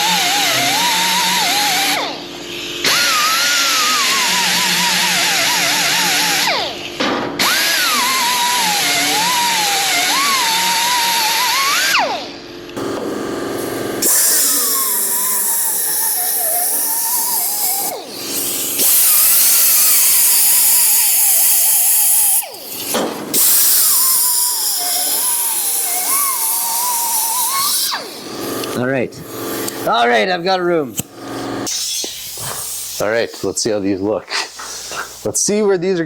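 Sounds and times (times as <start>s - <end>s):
angle grinder grinding metal: 0.0s - 2.1s, 7.4s - 11.9s, 12.8s - 33.5s.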